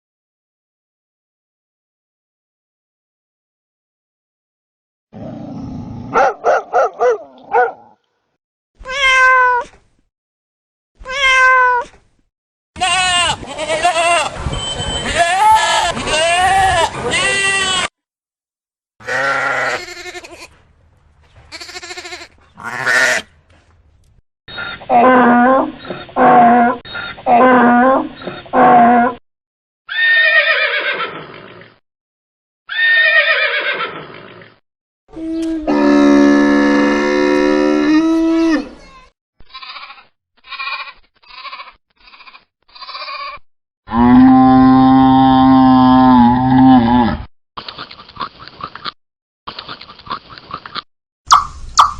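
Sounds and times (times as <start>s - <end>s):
cat meowing: 8.8s - 9.7s, 11.0s - 11.9s
animal bleating: 12.8s - 14.4s, 15.0s - 17.9s, 19.0s - 20.6s, 21.5s - 23.3s, 37.8s - 43.4s
animal calling: 21.6s - 23.3s.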